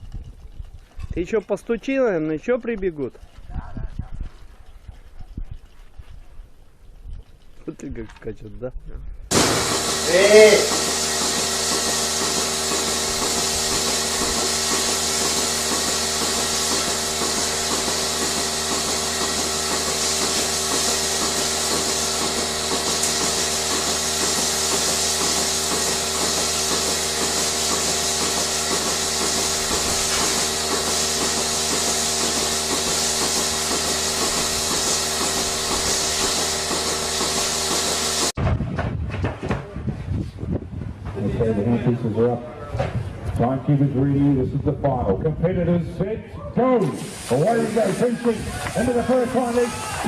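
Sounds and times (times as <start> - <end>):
machinery humming and pulsing: 9.3 - 38.4.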